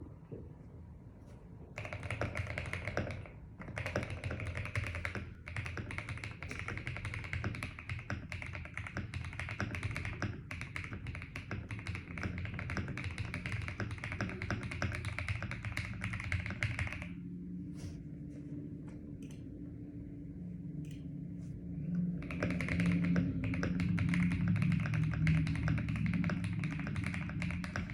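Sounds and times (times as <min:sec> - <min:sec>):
steady low hum: 0:00.0 - 0:27.9
fast typing on mechanical keyboard: 0:01.8 - 0:17.2, 0:22.0 - 0:27.9.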